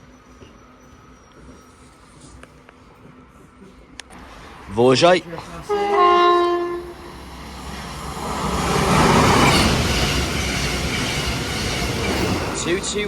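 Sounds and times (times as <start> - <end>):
train rushing past: 4.1 - 13.0
two-tone train horn: 5.5 - 7.2.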